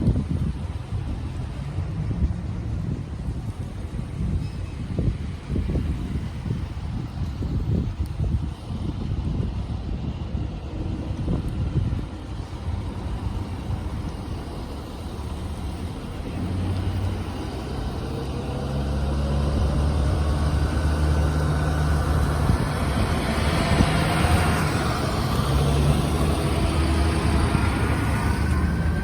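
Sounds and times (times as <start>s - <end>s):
vehicle engine humming: 5.0s - 29.0s.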